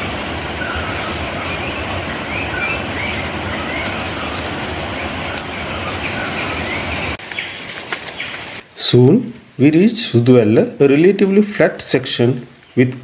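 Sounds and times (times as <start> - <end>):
loud rushing noise: 0.0 - 7.2
birds chirping: 0.0 - 8.6, 9.4 - 13.0.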